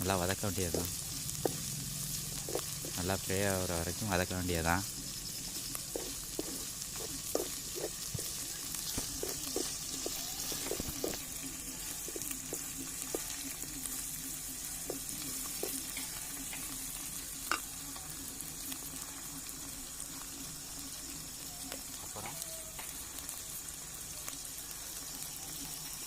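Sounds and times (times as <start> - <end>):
vegetables sizzling in oil: 0.0 - 26.0
utensil scraping a pan: 5.7 - 11.3
utensil knocking a pan: 6.0 - 8.4.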